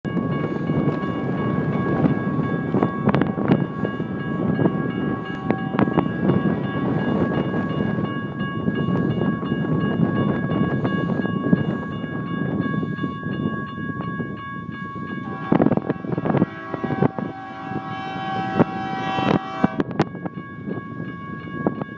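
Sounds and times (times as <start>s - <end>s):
high steady tones: 0.1s - 21.9s
train rumbling past: 0.1s - 21.9s.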